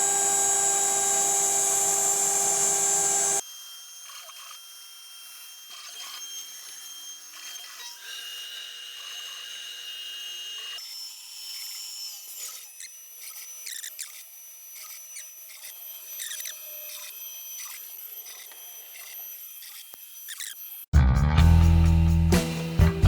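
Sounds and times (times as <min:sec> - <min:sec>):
router bit scraping wood: 0:00.0 - 0:03.4, 0:11.6 - 0:20.8
cnc router motors whining: 0:00.0 - 0:09.5.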